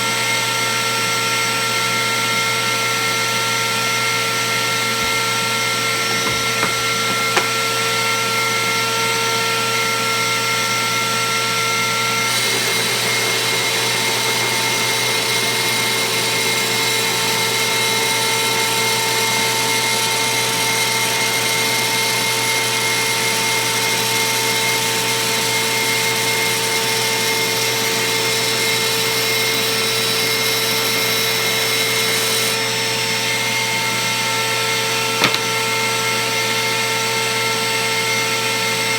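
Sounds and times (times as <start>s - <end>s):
router whining at high speed: 0.0s - 38.9s
router bit cutting acrylic hiss: 4.4s - 8.5s, 12.2s - 23.0s, 35.2s - 35.6s.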